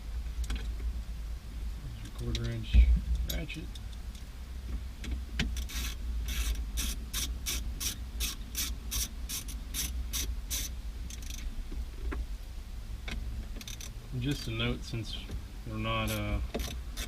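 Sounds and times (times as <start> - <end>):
ratchet clicking: 5.4 - 11.4, 13.6 - 14.0, 16.0 - 17.0.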